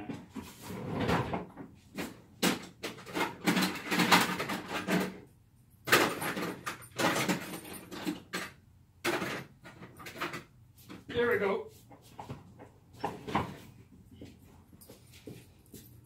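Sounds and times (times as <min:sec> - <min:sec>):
hand tools clicking and knocking: 0:02.0 - 0:10.5.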